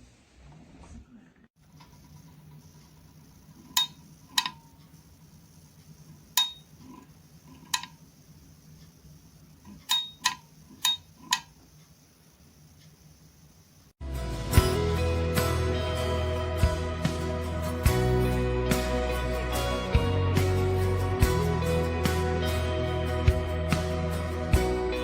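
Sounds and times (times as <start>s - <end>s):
sharp clicks with ringing tone: 3.7s - 4.8s, 6.4s - 7.0s, 9.6s - 11.6s.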